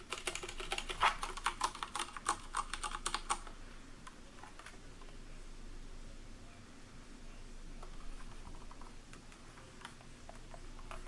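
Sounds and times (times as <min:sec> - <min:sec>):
mechanical keyboard typing: 0:00.0 - 0:03.5, 0:08.3 - 0:11.0.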